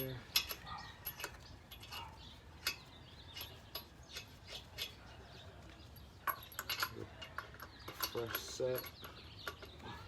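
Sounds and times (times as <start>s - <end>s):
metallic clicks and clinks of tools: 0.0s - 5.0s, 6.2s - 9.7s.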